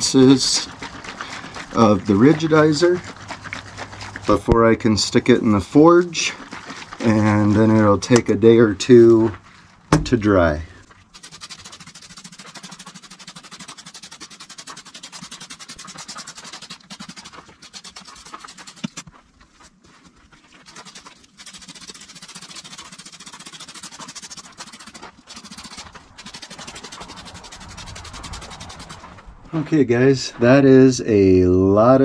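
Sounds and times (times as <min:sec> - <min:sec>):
sprayer spray pulses: 0:11.1 - 0:19.0, 0:20.8 - 0:29.6.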